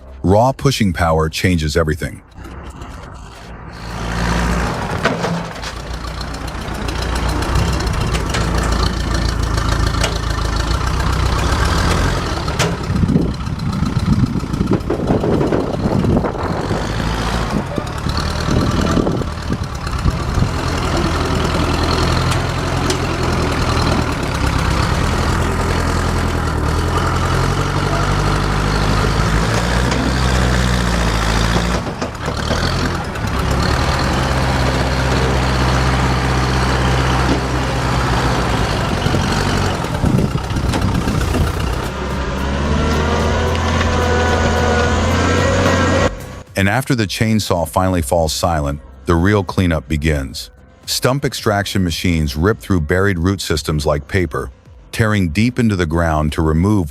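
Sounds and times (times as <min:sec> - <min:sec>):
higher engine note rising: 0:02.2 - 0:47.0
heavy diesel engine running: 0:02.2 - 0:56.9.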